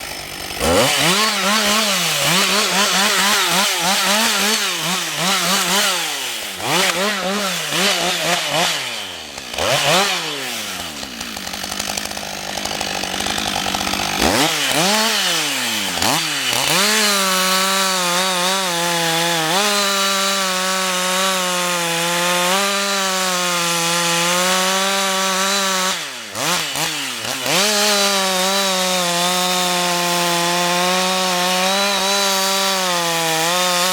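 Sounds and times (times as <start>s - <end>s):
chainsaw engine revving: 0.0s - 33.9s.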